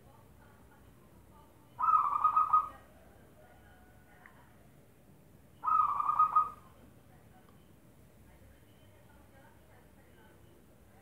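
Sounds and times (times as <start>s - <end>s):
dove cooing: 1.8s - 2.9s, 5.6s - 6.7s.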